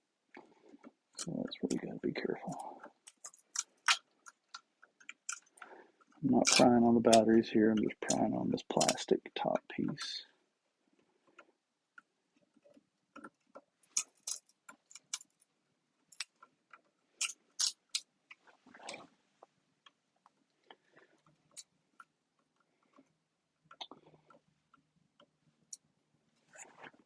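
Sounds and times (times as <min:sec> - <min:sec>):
plastic clicks and snaps: 0:02.5 - 0:09.1.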